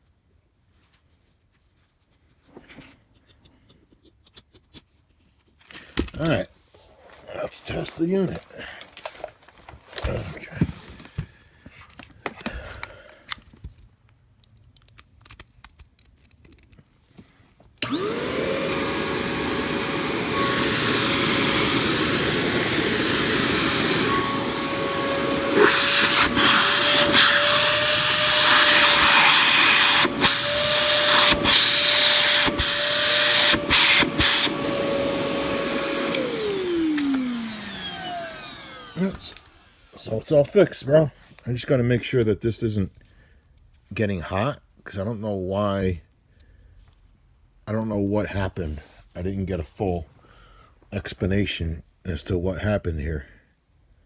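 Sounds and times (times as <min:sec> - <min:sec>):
handling noise: 0:17.8 - 0:39.0
vacuum cleaner motor whine: 0:17.8 - 0:40.0.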